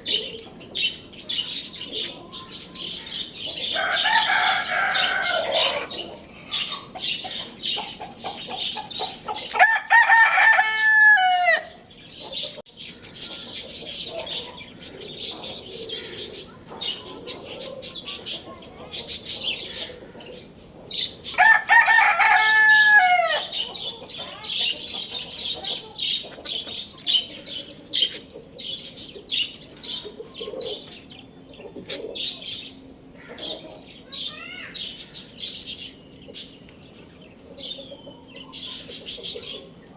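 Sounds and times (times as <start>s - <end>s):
chickens clucking: 0.0s - 34.2s, 34.8s - 39.9s
birds chirping: 0.0s - 39.9s
rooster crowing: 3.7s - 5.9s, 9.6s - 11.8s, 21.4s - 23.5s.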